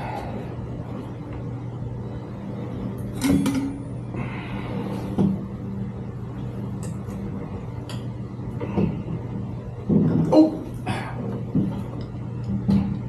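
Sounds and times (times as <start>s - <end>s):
steady low hum: 0.0s - 13.0s
metal bicycle parts clanking: 3.0s - 3.8s.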